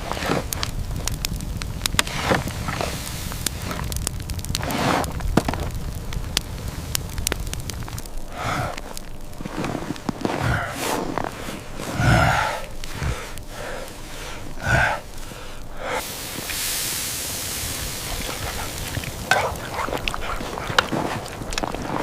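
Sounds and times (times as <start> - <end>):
blizzard wind hissing: 0.0 - 22.0
person gasping: 8.3 - 9.0, 10.3 - 16.4.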